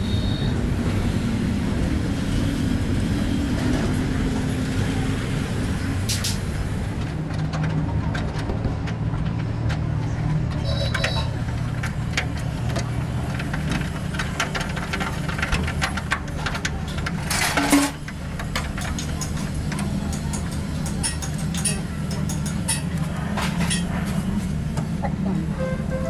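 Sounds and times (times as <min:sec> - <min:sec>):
metallic ticks and knocks: 0:17.0 - 0:23.0.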